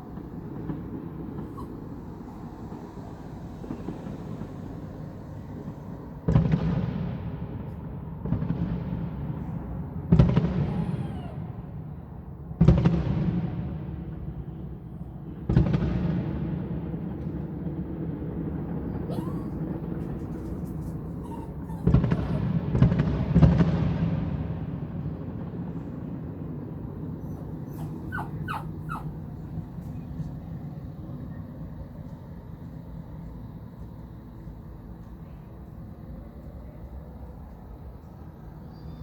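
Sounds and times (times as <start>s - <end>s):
fireworks booming: 0.0s - 14.7s, 15.3s - 31.8s
dog barking: 1.4s - 2.0s, 10.6s - 11.6s, 19.1s - 22.6s, 27.2s - 30.3s.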